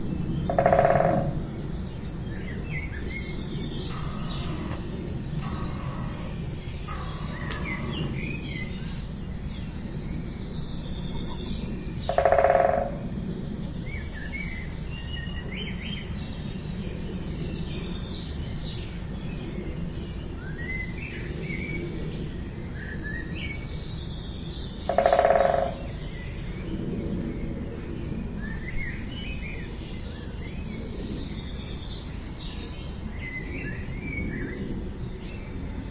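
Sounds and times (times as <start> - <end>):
low background rumble: 0.0 - 35.9
small birds chirping: 24.0 - 27.2.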